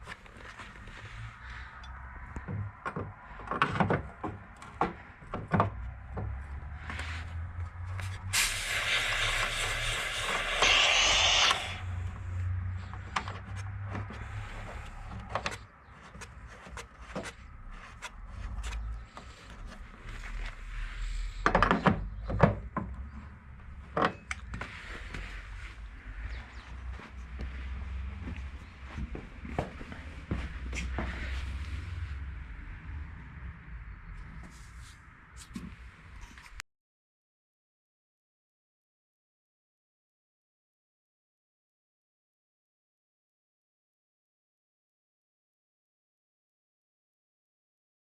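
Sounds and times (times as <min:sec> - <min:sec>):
loud hiss: 0:08.3 - 0:12.1.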